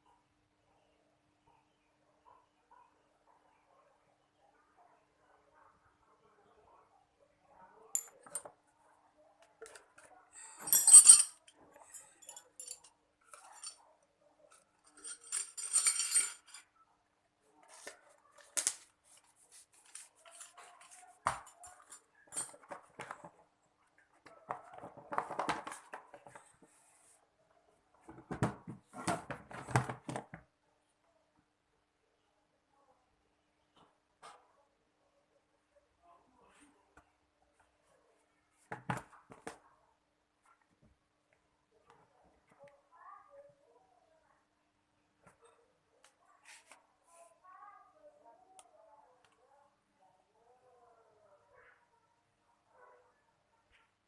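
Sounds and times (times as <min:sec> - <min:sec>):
rustling or scraping: 0:18.7 - 0:22.8.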